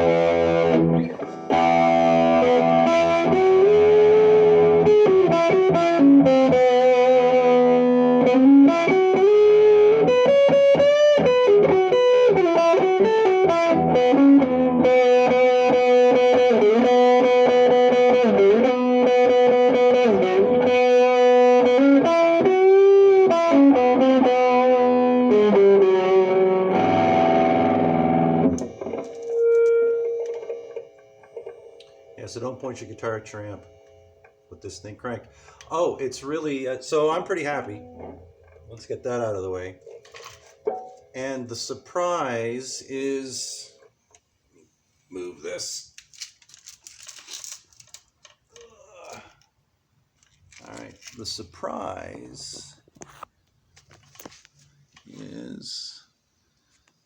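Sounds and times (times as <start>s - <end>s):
distorted electric guitar: 0.0s - 41.5s.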